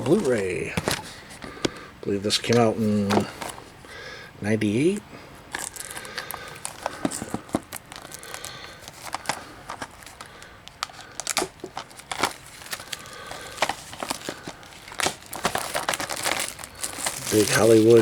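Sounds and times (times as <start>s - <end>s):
plastic wrap tearing and crinkling: 0.0s - 1.4s, 5.5s - 18.0s.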